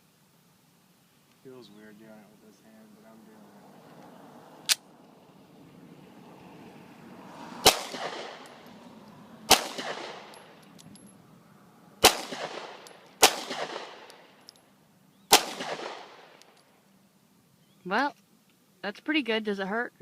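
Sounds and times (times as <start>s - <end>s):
pistol shots with echo: 7.6s - 8.6s, 9.5s - 10.6s, 12.0s - 14.4s, 15.3s - 16.4s.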